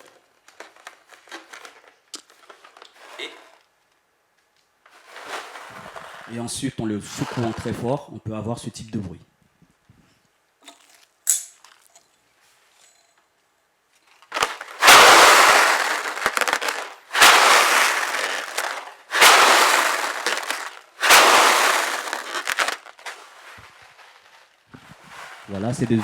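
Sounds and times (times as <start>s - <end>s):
lentils rattling in a balloon: 0.0s - 3.5s, 4.9s - 7.8s, 14.1s - 26.0s.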